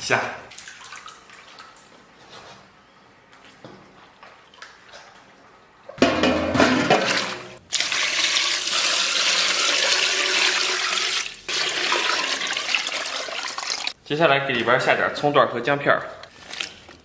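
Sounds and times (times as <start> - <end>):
tap water running into basin: 6.8 - 14.0.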